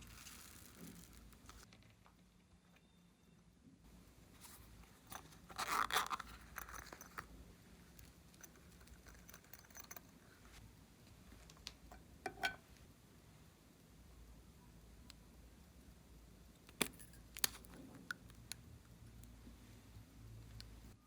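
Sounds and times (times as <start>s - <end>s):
slime crackling and popping: 0.0s - 1.7s.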